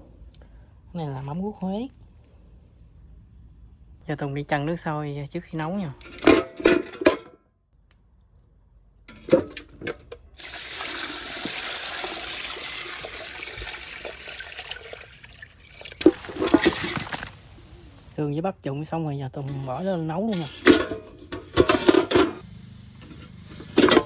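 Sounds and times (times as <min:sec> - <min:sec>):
water running: 0:10.3 - 0:18.2.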